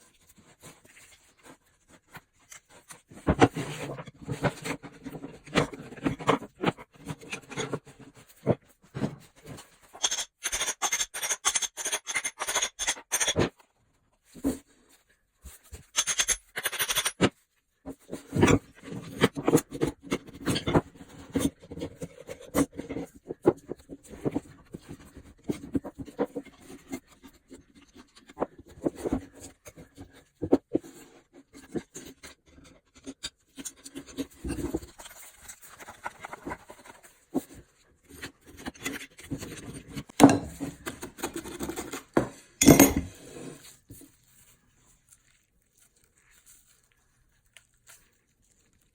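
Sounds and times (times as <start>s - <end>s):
metal clinks and knocks: 15.9s - 17.3s, 42.6s - 43.1s.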